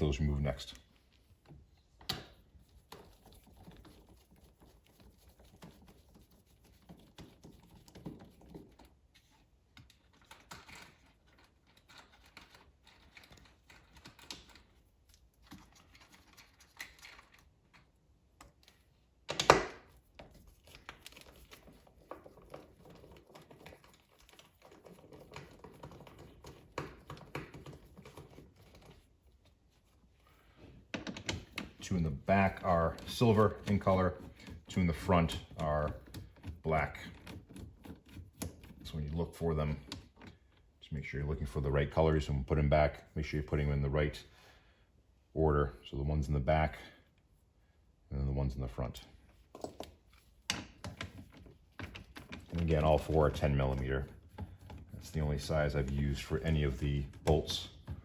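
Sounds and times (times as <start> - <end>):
tools and parts rattling: 49.0 - 58.0.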